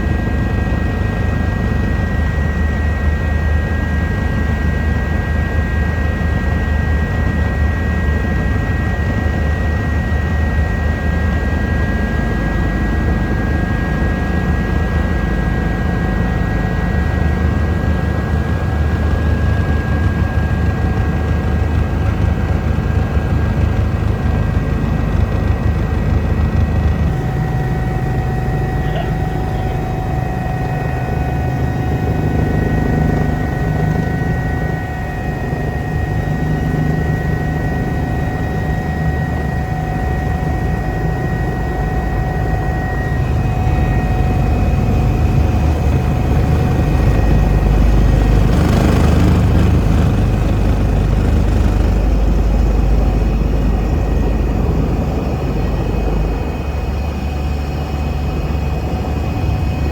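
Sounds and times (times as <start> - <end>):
helicopter rotor and engine hum: 0.0 - 59.9
high turbine whine: 0.0 - 59.9.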